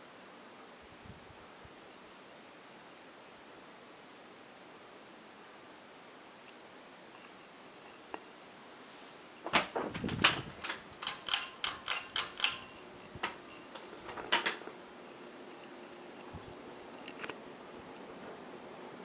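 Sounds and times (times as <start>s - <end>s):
faint steady hiss: 0.0s - 19.0s
sharp clicks and rattles: 9.5s - 14.7s, 16.9s - 17.4s.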